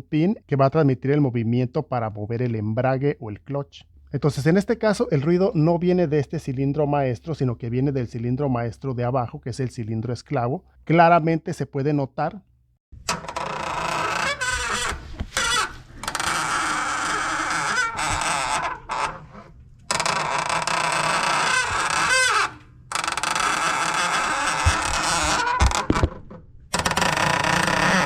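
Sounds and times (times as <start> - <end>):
clutch cylinder squealing and groaning: 13.1 - 25.9, 26.7 - 28.0.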